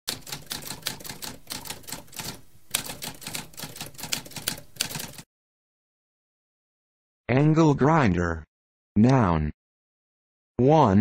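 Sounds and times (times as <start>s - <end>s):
typewriter keys clacking: 0.1s - 5.2s.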